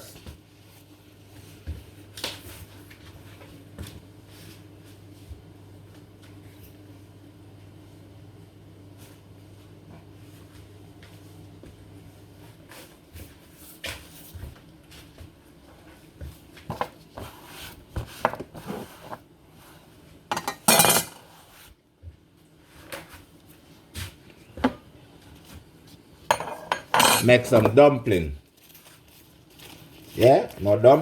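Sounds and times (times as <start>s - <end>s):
dishes and utensils clinking: 20.3s - 21.3s, 26.3s - 27.8s.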